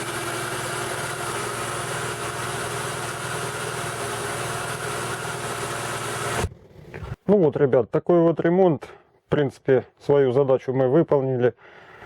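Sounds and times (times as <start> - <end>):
car engine idling: 0.0 - 6.5.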